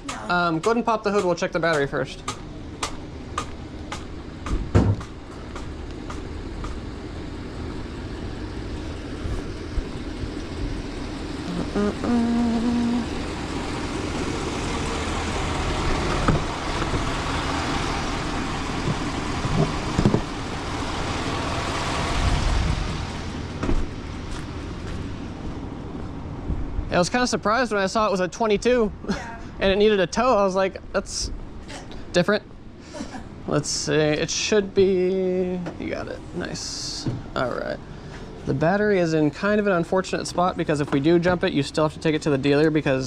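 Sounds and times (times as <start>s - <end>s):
road traffic passing: 0.0s - 43.0s
knocks: 0.6s - 6.8s.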